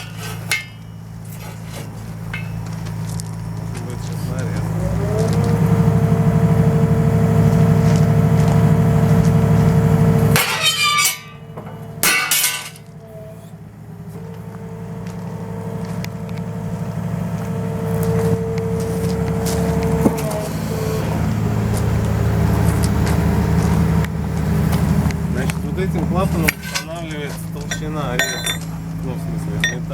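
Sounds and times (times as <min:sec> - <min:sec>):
metal shear cracking metal: 0:00.0 - 0:01.6, 0:10.3 - 0:12.9, 0:26.5 - 0:28.7
hydraulic whine: 0:00.0 - 0:12.1, 0:12.7 - 0:29.9
engine running: 0:00.0 - 0:29.9.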